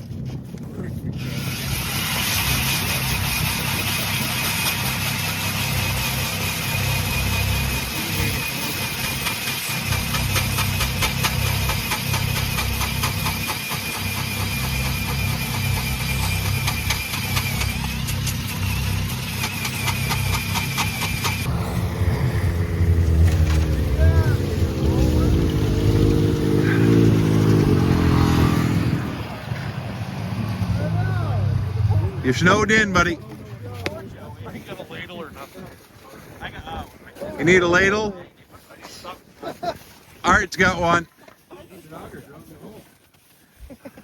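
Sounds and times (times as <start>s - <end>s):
vehicle engine running: 0.8s - 35.4s
high whine: 14.4s - 29.8s.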